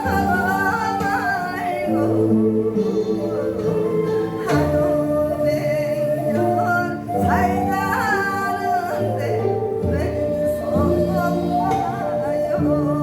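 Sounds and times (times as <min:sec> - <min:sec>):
instrumental accompaniment: 0:00.0 - 0:13.0
woman singing folk song: 0:00.0 - 0:13.0.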